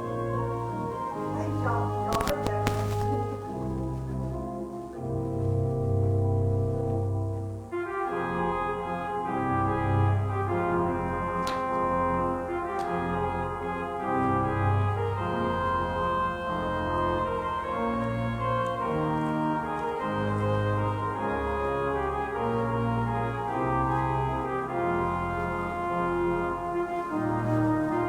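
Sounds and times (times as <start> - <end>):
organ playing slow chords: 0.0 - 28.0.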